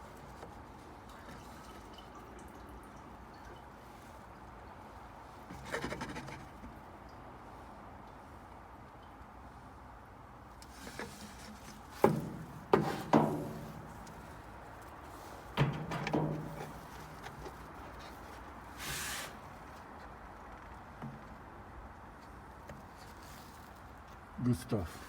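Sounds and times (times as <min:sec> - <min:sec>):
sharp ringing knocks and clunks: 0:12.1 - 0:14.3, 0:15.6 - 0:17.8
brief hiss: 0:18.8 - 0:19.5.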